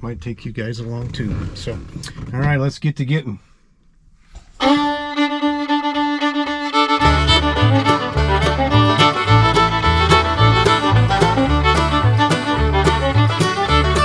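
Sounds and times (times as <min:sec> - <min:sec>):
fiddle tune: 0:04.6 - 0:14.0
bass line: 0:04.7 - 0:14.0.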